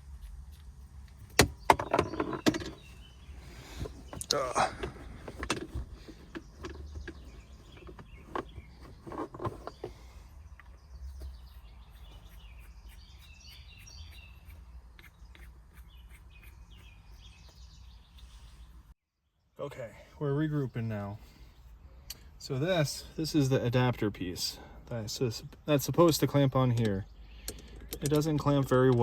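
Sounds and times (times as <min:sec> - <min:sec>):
birds chirping: 0:00.0 - 0:29.0
small parts clicking and knocking: 0:26.8 - 0:29.0.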